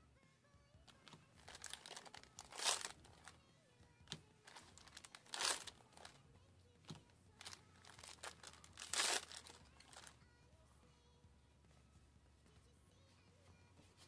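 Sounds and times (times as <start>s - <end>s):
foil wrappers crinkling and tearing: 1.4s - 3.3s, 4.4s - 6.2s, 7.4s - 10.1s.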